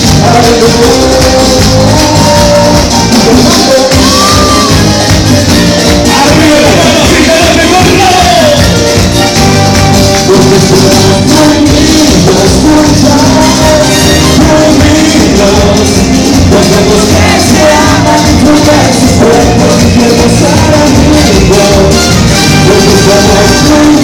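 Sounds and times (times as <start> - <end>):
band music with dance beat: 0.0 - 24.0.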